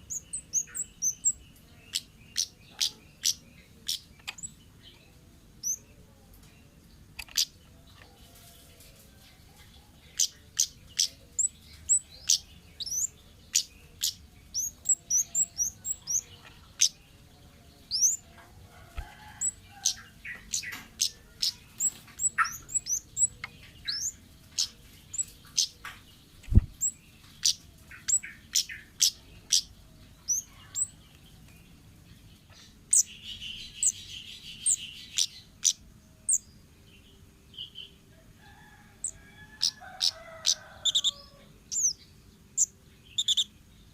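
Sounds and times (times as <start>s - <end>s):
buzzy bird chattering: 0.0s - 4.6s, 7.1s - 7.6s, 10.1s - 17.0s, 19.0s - 25.7s, 42.6s - 43.5s
bird chirping: 0.0s - 43.9s.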